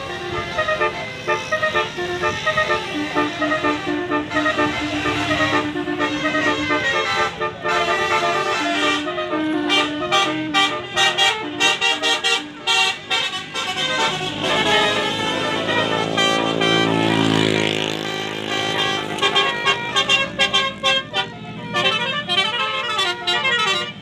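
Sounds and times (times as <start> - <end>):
bus horn playing a melody: 0.0 - 24.0.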